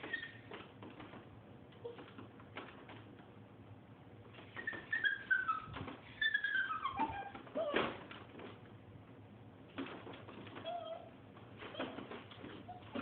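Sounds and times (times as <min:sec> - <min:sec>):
dog whining: 0:04.5 - 0:08.1, 0:10.5 - 0:13.0.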